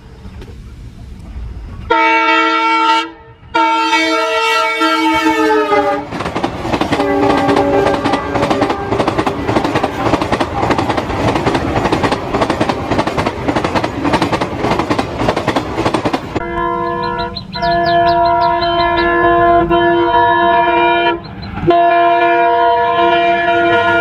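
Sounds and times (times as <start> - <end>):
locomotive horn: 1.9 - 6.2, 6.9 - 10.8, 16.4 - 24.0
train wheels clattering: 5.3 - 19.8
steady tone: 16.2 - 21.8.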